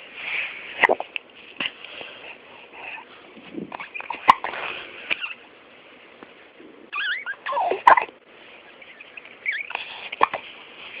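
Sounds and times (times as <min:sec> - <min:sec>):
pet hiccupping: 0:06.9 - 0:10.4.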